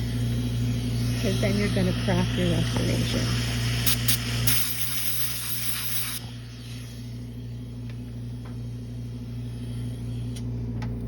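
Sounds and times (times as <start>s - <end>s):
electrical mains hum: 0.0s - 11.0s.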